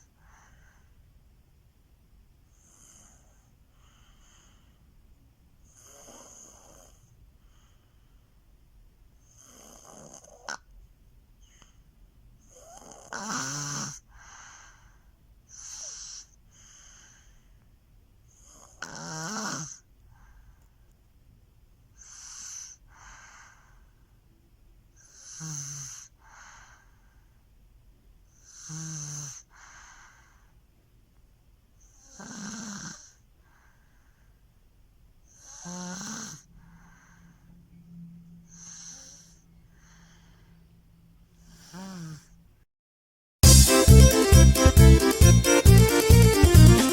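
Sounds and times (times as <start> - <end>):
baby snoring: 5.7 - 7.1, 9.3 - 10.7, 12.4 - 14.7, 15.5 - 17.1, 18.4 - 19.9, 22.0 - 23.6, 25.0 - 26.5, 28.4 - 30.4, 31.9 - 33.3, 35.3 - 37.4, 38.5 - 40.5, 41.4 - 42.4.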